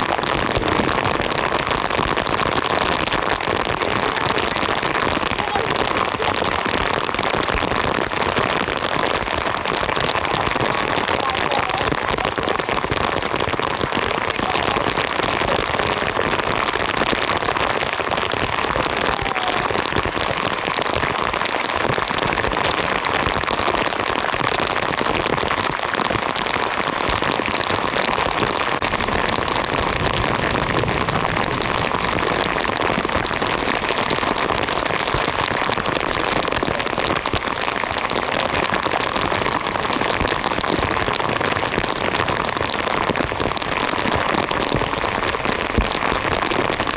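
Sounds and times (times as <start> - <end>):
heavy rain falling: 0.0 - 46.9.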